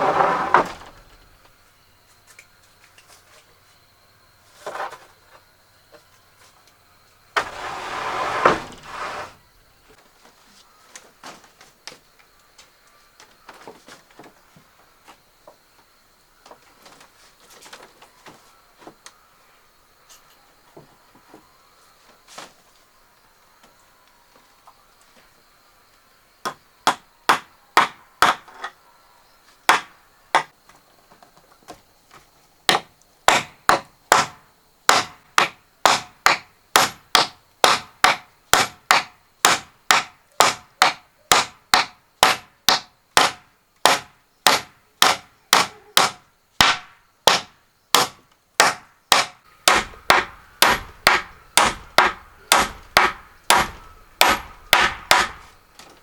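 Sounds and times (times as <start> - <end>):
hammer driving nails into wood: 7.4 - 9.3, 32.7 - 55.5.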